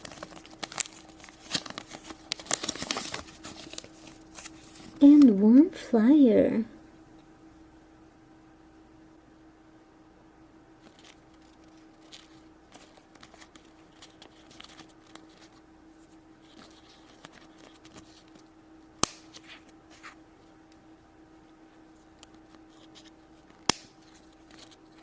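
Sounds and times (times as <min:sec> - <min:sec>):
toy packaging crinkling: 0:00.0 - 0:05.2, 0:10.9 - 0:15.6.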